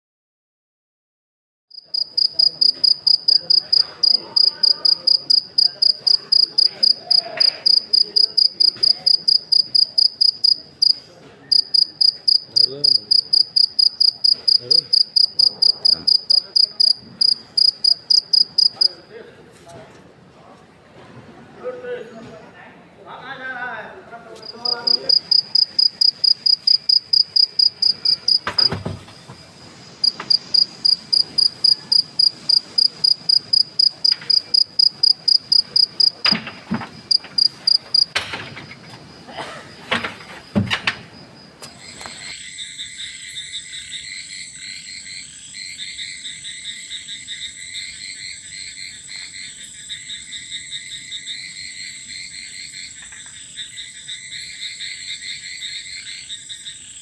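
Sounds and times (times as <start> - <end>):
cricket chirping: 1.7 - 19.1, 24.4 - 57.0
insects and frogs trilling: 1.7 - 19.1, 24.4 - 57.0
knocks: 27.2 - 31.7, 34.0 - 39.1, 39.8 - 42.3.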